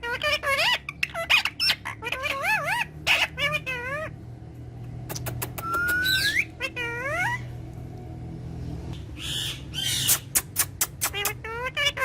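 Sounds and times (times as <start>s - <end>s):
sharp clicks: 5.1s - 6.1s
parrot whistling: 5.6s - 7.4s.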